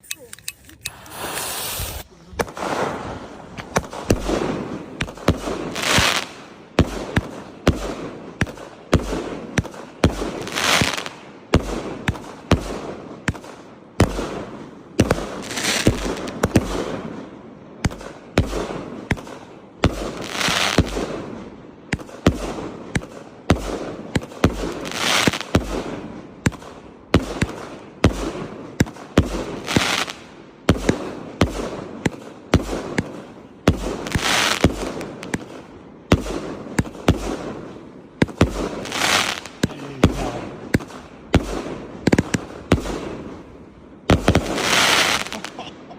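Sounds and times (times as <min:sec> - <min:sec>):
loud hissing rush: 0:00.9 - 0:03.6, 0:39.0 - 0:40.8
fireworks bangs and crackles: 0:00.9 - 0:45.9.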